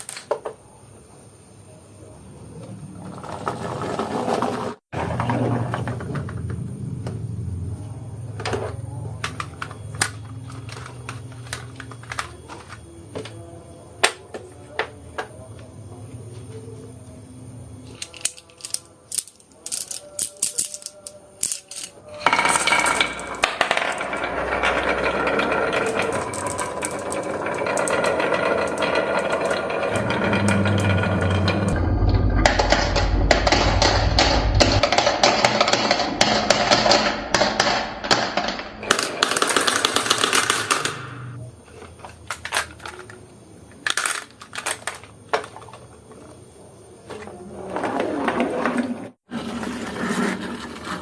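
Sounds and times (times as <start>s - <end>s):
marbles rolling on wooden track: 3.0s - 6.7s, 17.9s - 41.4s, 47.0s - 51.0s.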